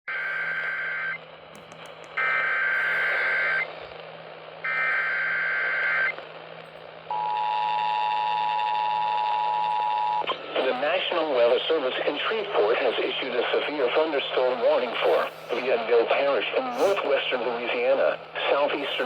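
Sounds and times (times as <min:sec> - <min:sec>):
radio reception hiss: 0:00.1 - 0:19.0
rasping data tone: 0:02.2 - 0:03.7.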